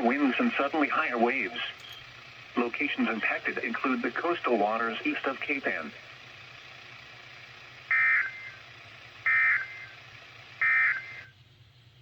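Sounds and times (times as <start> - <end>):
radio hiss: 0.0 - 1.8, 2.5 - 6.1.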